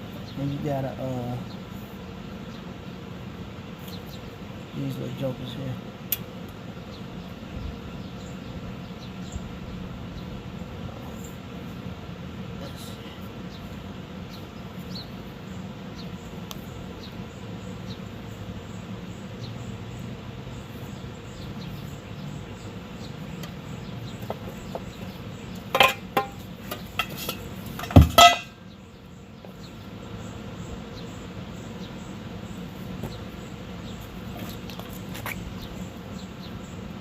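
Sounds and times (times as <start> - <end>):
steady low hum: 0.0 - 37.0
heavy metal knock: 27.8 - 28.5.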